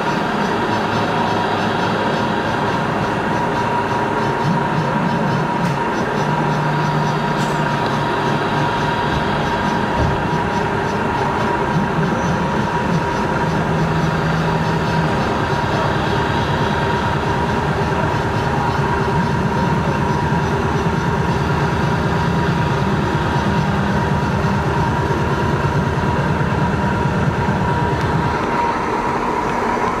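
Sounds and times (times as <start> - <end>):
lathe machine running with whine: 0.0 - 30.0.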